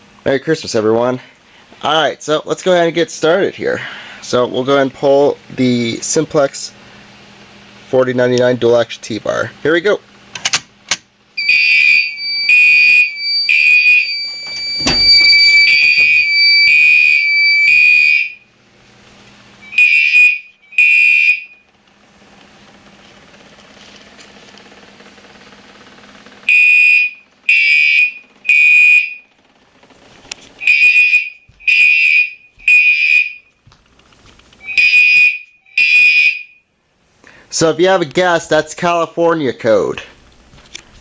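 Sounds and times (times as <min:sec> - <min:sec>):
steady high tone: 0:11.4 - 0:18.4
fire alarm horn blasts: 0:11.4 - 0:18.5, 0:19.6 - 0:21.7, 0:26.5 - 0:29.3, 0:30.6 - 0:33.5, 0:34.6 - 0:36.7
thump: 0:14.8 - 0:16.2.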